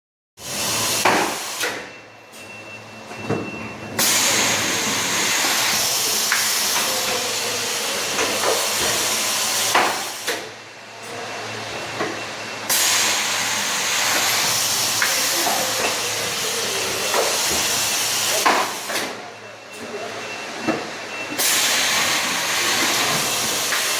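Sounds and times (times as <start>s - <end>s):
loud air hiss: 0.4s - 1.8s, 4.0s - 10.5s, 12.7s - 19.1s, 21.4s - 23.9s.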